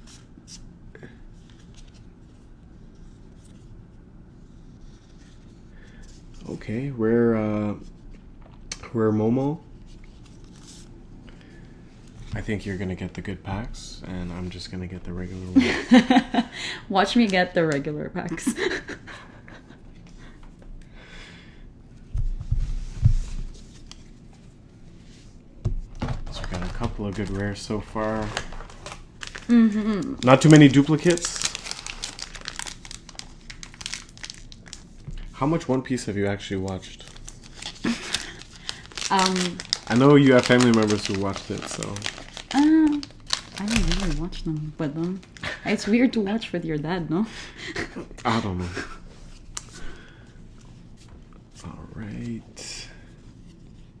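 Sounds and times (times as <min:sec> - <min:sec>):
low room hum: 0:00.0 - 0:54.0
cards rustling: 0:26.3 - 0:44.2
wrapper rustling: 0:26.3 - 0:45.8
cards rustling and flicking: 0:36.6 - 0:44.2.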